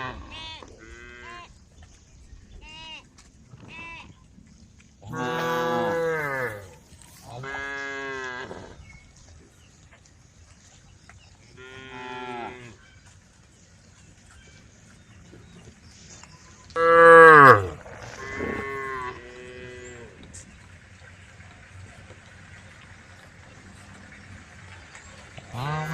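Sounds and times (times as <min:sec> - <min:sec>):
cows mooing: 0:05.1 - 0:08.8, 0:16.8 - 0:20.2, 0:25.5 - 0:25.9.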